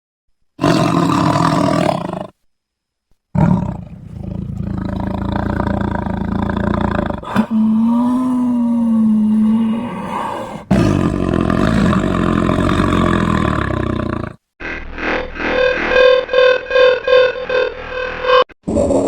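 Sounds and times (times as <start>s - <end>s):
big cat roars: 0.6s - 2.4s, 3.4s - 14.4s.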